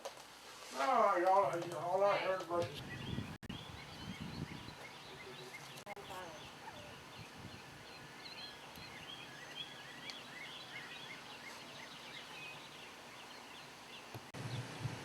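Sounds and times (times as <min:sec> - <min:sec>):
birds chirping and chattering: 0:02.2 - 0:14.8.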